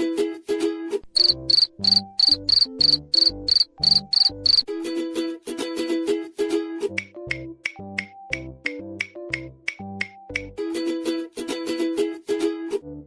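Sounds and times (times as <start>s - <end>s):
plucked-string tune: 0.0s - 12.9s
crickets chirping: 1.2s - 4.6s.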